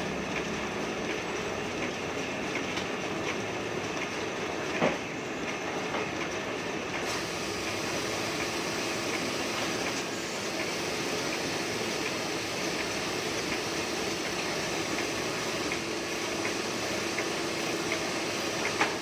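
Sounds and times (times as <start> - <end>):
printing press clattering: 0.0 - 19.0.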